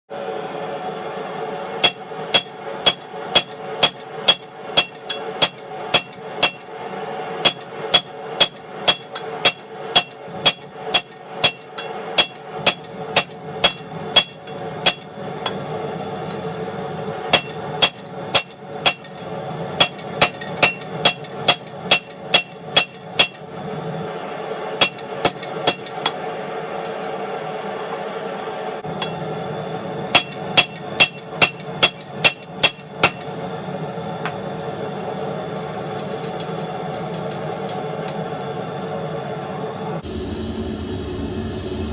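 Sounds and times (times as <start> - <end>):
hammer striking hot steel: 1.8 - 6.8, 7.4 - 16.5, 17.2 - 23.5, 24.8 - 27.0, 28.8 - 29.4, 30.1 - 33.4
steady drone: 22.8 - 41.9.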